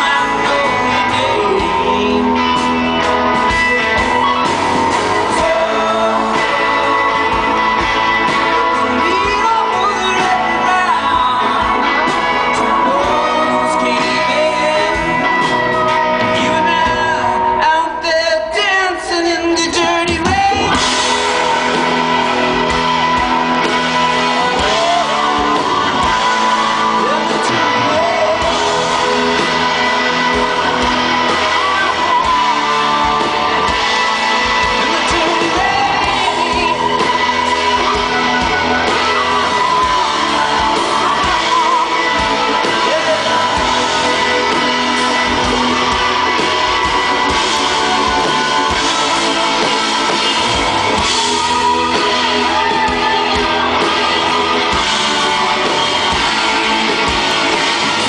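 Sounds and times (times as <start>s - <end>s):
electric guitar: 0.0s - 58.0s
live rock band playing: 0.0s - 58.0s
person singing: 0.0s - 58.0s.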